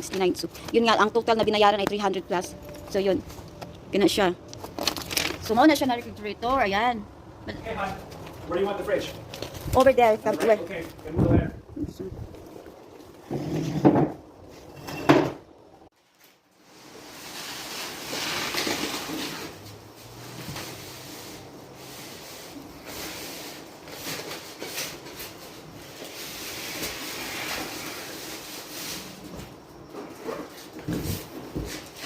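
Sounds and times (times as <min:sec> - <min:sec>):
refrigerator box rubbing and scraping: 0:13.2 - 0:14.0, 0:16.7 - 0:32.0.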